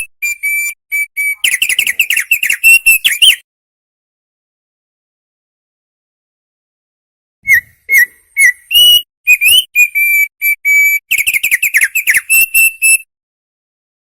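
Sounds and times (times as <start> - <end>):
songbird singing high notes: 0.2 - 3.4, 7.4 - 13.0.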